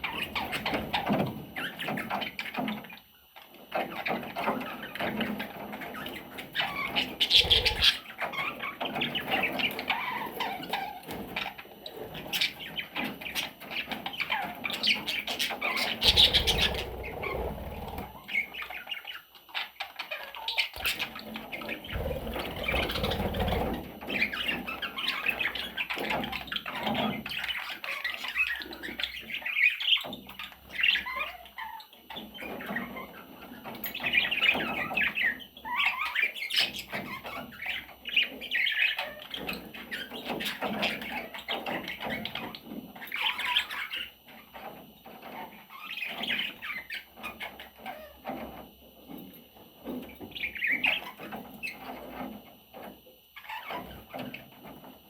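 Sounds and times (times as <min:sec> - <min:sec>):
budgerigar chattering and warbling: 0:06.6 - 0:08.6, 0:14.2 - 0:19.2, 0:19.8 - 0:25.6.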